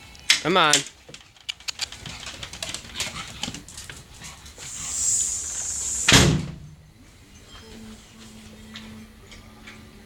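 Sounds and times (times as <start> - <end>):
dog panting: 1.8 - 5.0
steady hiss: 4.4 - 7.2
loud thump: 6.0 - 6.7.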